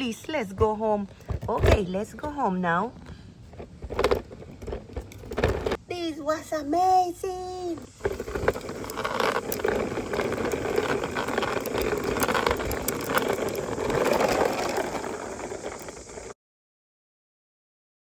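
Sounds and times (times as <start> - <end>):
toy helicopter whirring and rattling: 7.1 - 16.4.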